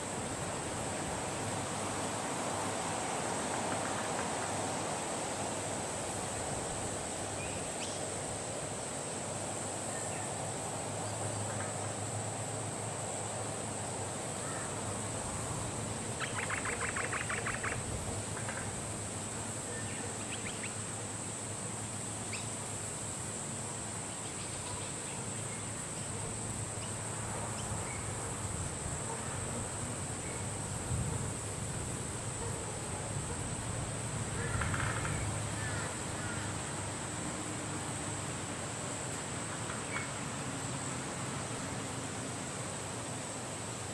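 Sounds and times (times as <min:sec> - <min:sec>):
rapid rattling bird trill: 0:16.2 - 0:17.8
wind noise: 0:30.2 - 0:35.5.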